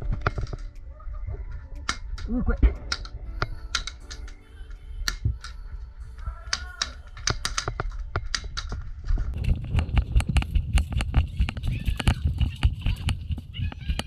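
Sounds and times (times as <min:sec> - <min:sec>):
background music: 0:00.0 - 0:09.4
sharp snapping clicks: 0:01.8 - 0:04.4, 0:05.0 - 0:05.6.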